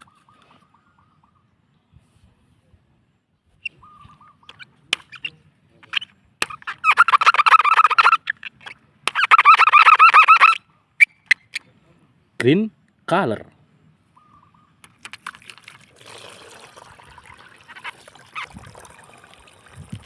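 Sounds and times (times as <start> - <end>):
rapid bird-like calls: 17.3 - 19.1.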